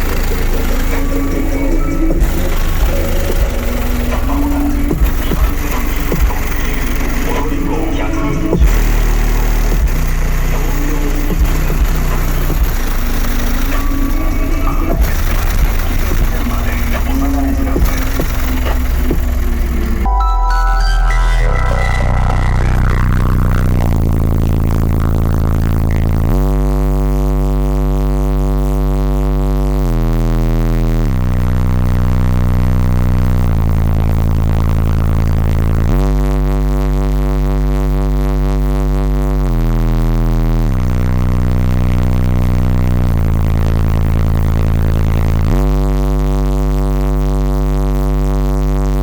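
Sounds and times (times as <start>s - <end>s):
bass-heavy music through car subwoofers: 0.0s - 49.0s.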